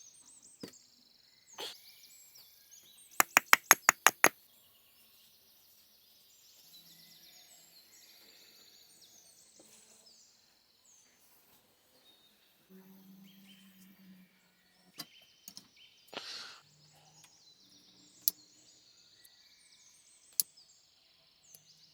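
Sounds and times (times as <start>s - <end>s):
rapid sharp knocks: 3.2s - 4.3s.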